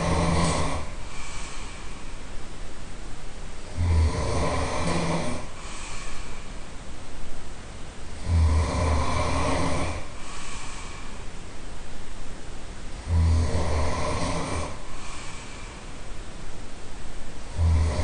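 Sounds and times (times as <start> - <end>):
person snoring heavily: 0.0 - 1.7, 3.6 - 6.3, 8.2 - 11.0, 13.0 - 15.8, 17.5 - 18.0
quiet breathing: 0.0 - 2.8, 3.6 - 7.4, 8.0 - 11.9, 12.9 - 18.0.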